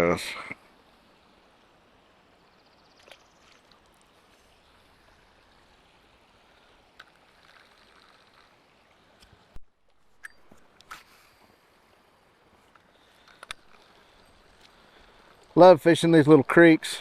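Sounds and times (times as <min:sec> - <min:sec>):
creek water rushing: 0:00.0 - 0:09.6, 0:10.6 - 0:17.0
light clicks: 0:12.7 - 0:13.9.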